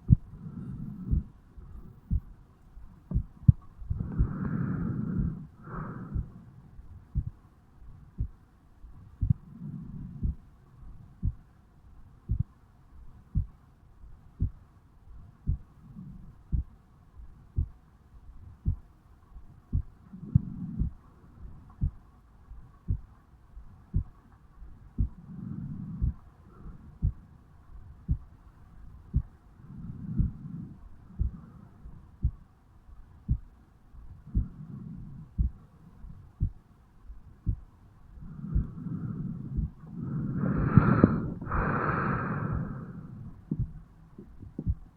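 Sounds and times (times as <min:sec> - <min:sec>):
heartbeat thumps: 0:00.0 - 0:11.5, 0:12.2 - 0:44.9.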